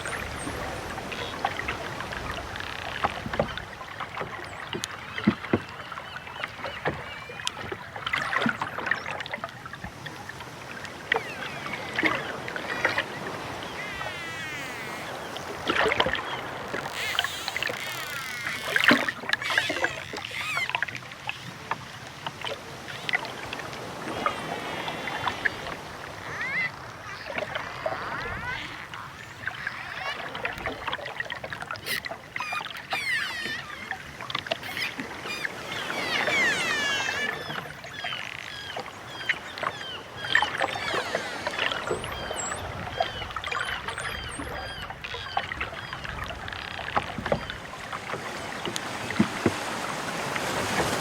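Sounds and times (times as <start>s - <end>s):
dolphin whistles: 11.2s - 15.7s, 31.8s - 34.0s, 34.6s - 44.9s
dolphin clicks: 13.7s - 21.0s, 31.7s - 39.4s.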